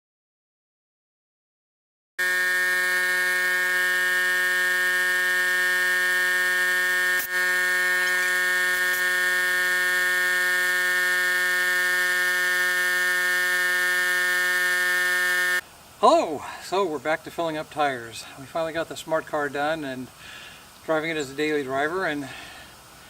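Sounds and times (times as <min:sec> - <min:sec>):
air compressor humming: 0:02.2 - 0:15.6.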